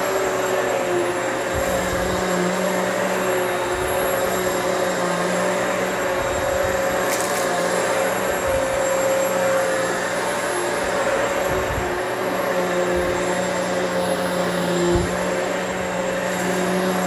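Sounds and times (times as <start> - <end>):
upright vacuum running: 0.0 - 17.0.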